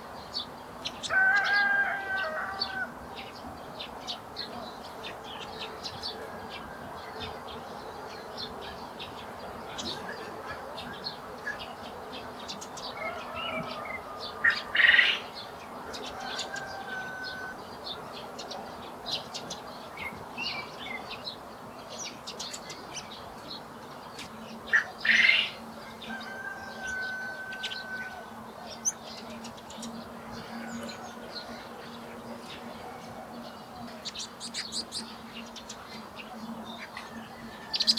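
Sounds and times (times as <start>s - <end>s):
harsh bird calls: 0.0s - 7.8s, 19.1s - 37.9s
birds chirping: 0.0s - 37.9s.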